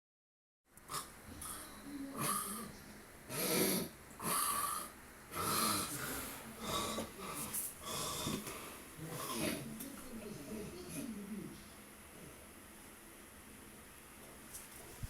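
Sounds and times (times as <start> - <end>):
man snoring: 3.3 - 9.7.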